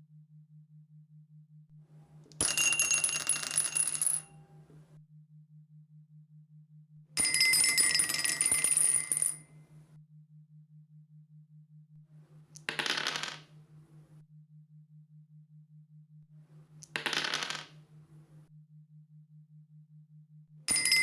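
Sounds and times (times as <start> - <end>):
dice clattering on a hard surface: 12.6 - 13.6, 16.8 - 17.8.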